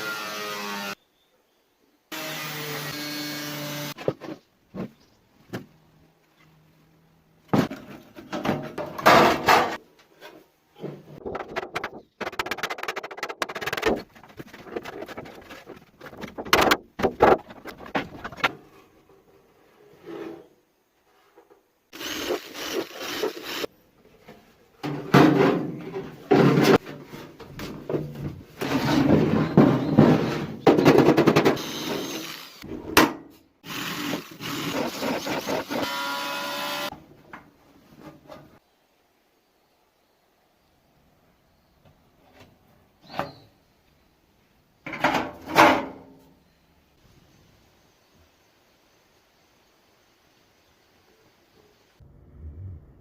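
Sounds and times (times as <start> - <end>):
tool rattling and scraping: 7.6 - 19.2
power tool whine: 31.6 - 32.6.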